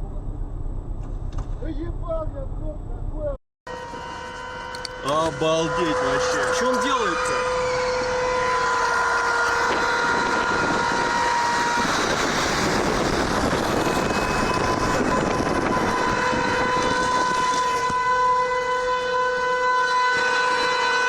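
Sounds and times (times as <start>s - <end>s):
vehicle horn blasts: 3.7s - 12.2s, 13.8s - 21.0s.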